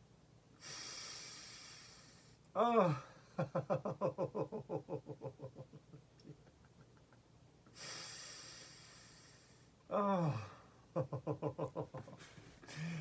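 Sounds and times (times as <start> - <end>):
short breathy hiss: 0.6 - 2.4, 7.7 - 9.8.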